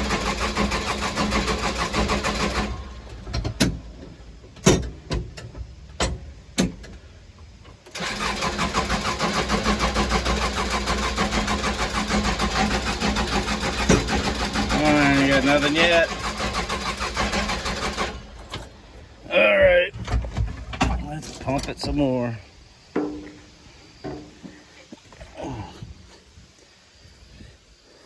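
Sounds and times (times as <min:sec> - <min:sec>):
diesel engine cranking: 0:00.0 - 0:22.4
sharp clicks and knocks: 0:03.1 - 0:07.0.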